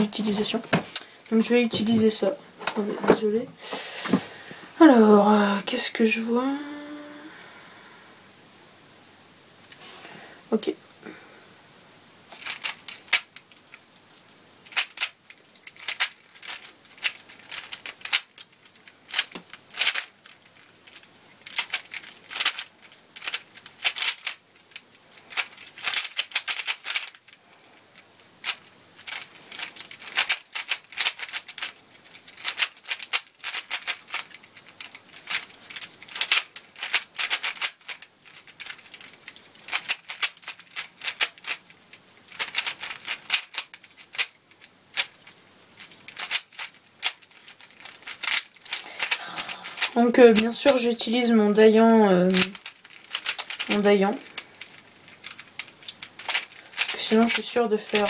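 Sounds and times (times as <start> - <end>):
puzzle cube turning clicks: 12.3 - 13.8, 14.6 - 27.4, 28.0 - 51.0, 52.3 - 58.0.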